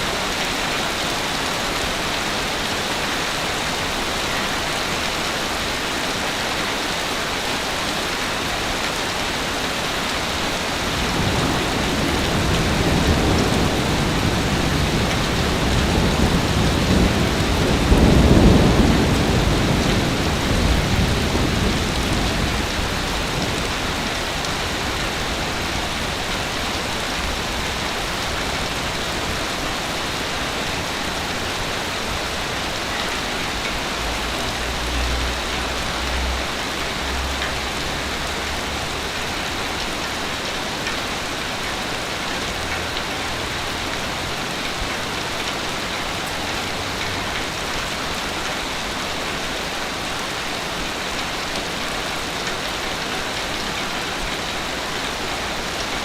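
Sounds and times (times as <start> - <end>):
ocean surf washing onto beach: 5.0 - 39.1.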